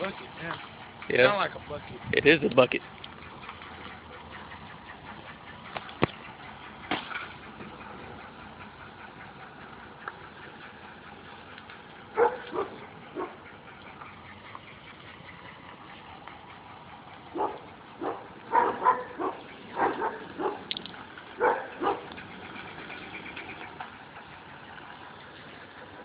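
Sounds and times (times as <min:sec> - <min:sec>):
car engine idling: 0:00.0 - 0:26.0
dog barking: 0:12.2 - 0:13.4, 0:17.3 - 0:20.7, 0:21.4 - 0:22.1.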